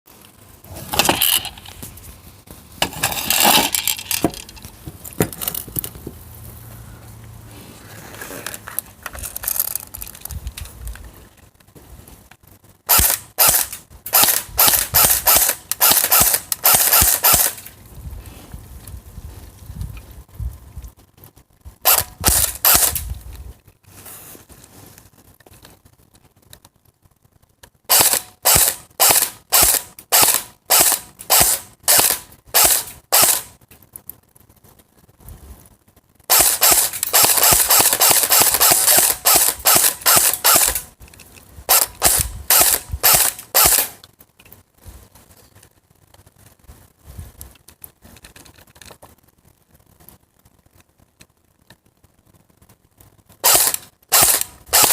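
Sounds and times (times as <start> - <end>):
airsoft rifle shots: 12.9 - 17.6, 21.8 - 23.0, 27.9 - 33.5, 36.3 - 40.9, 41.7 - 44.0, 53.4 - 54.9.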